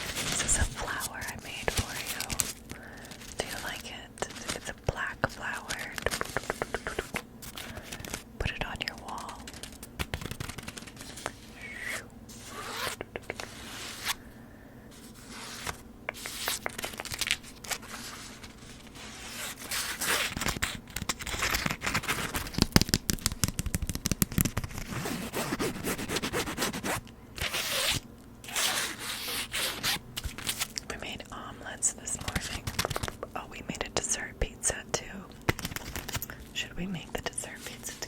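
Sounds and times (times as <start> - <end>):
zipper-like scratching rasps: 10.2 - 14.2, 17.8 - 20.6, 24.6 - 30.0.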